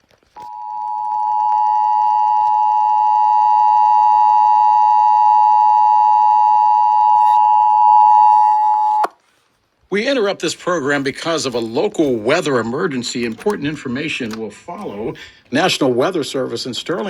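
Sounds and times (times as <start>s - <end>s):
two-tone alert signal: 0.4s - 9.0s.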